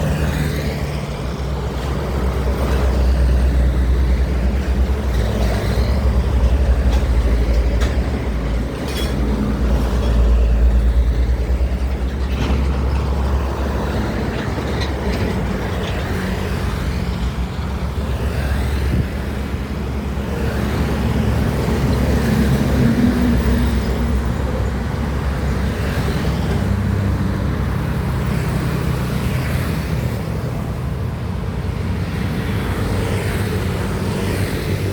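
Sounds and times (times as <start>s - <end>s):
truck engine rumble: 0.0s - 34.9s
tyre and road noise: 0.0s - 34.9s.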